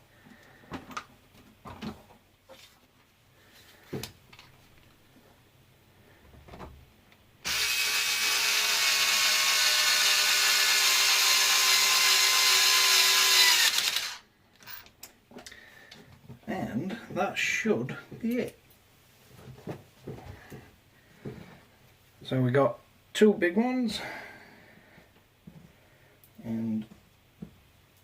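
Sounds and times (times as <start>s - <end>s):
electric drill-driver driving screw: 7.4s - 14.2s.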